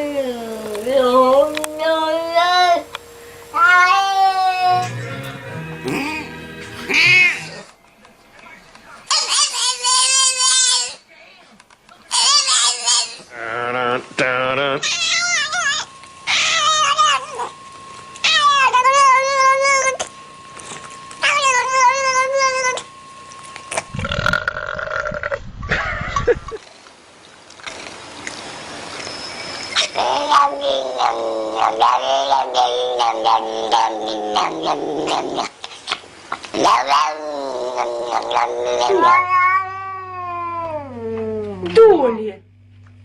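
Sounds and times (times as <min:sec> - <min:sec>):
cat yowling: 0:03.5 - 0:04.9, 0:06.9 - 0:07.7, 0:14.8 - 0:17.6, 0:18.2 - 0:20.0, 0:21.2 - 0:22.9, 0:29.8 - 0:35.5, 0:36.6 - 0:41.4
cat meowing: 0:03.6 - 0:04.9, 0:30.0 - 0:32.0, 0:38.1 - 0:41.0.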